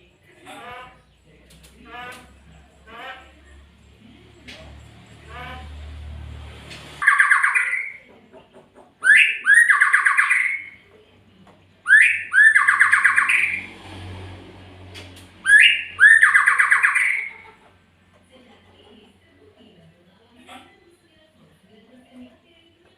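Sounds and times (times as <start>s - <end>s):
songbird whistle and rattling trill: 7.0s - 8.0s, 9.0s - 10.8s, 11.9s - 13.6s, 15.4s - 17.3s.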